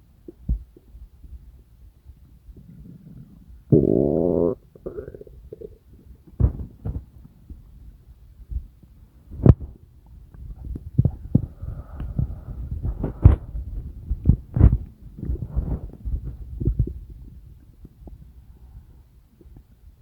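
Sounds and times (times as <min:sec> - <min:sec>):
stomach rumbling and gurgling: 0:00.0 - 0:20.0.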